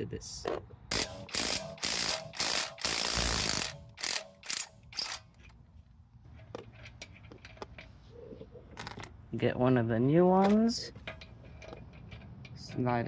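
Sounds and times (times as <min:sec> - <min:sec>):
ratchet wrench clicking: 0:00.9 - 0:05.4.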